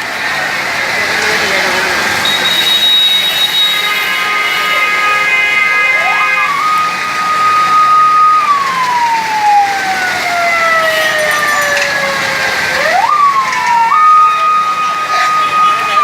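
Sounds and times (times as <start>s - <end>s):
siren wailing: 5.7s - 16.0s.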